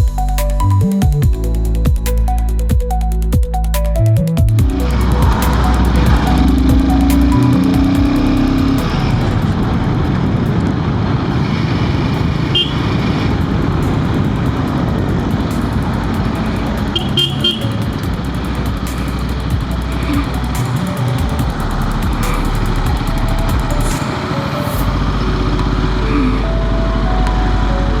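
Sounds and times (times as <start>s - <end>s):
motorcycle engine running: 4.4s - 26.4s
wind and road noise: 4.6s - 28.0s
vehicle horn toots: 12.5s - 13.3s, 16.9s - 17.9s.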